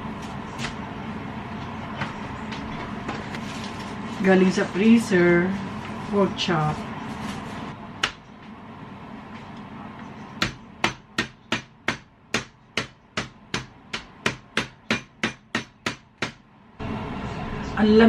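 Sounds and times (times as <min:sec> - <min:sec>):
meat being pounded: 0:10.4 - 0:16.5.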